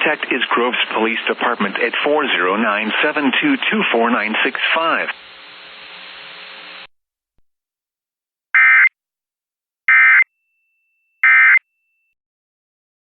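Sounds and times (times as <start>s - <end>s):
radio hiss: 0.0s - 6.9s.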